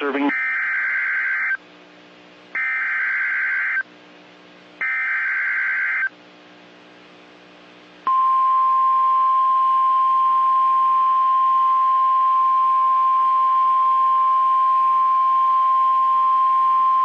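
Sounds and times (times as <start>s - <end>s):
steady warning alarm tone: 0.0s - 1.6s, 2.6s - 3.8s, 4.8s - 6.1s.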